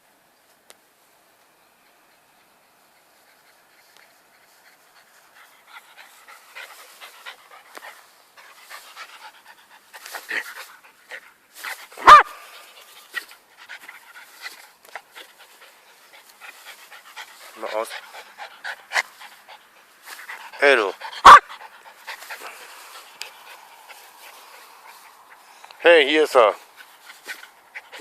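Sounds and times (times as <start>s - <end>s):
dog panting: 2.4s - 25.6s, 26.6s - 28.0s
dog barking: 12.0s - 12.5s, 21.2s - 21.5s.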